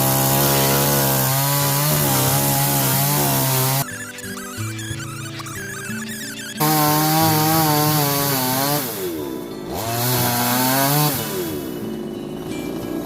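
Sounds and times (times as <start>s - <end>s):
chainsaw cutting wood: 0.0s - 4.4s, 6.6s - 13.0s.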